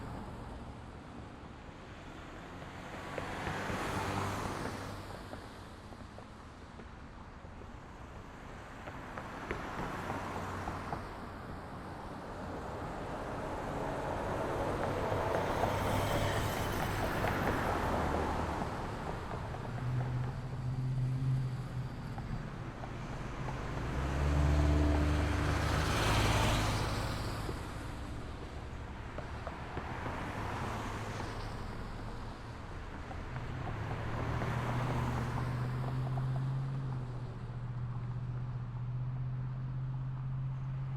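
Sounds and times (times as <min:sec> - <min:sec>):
cars going by: 0:00.0 - 0:40.9
vehicles passing close: 0:08.7 - 0:40.9.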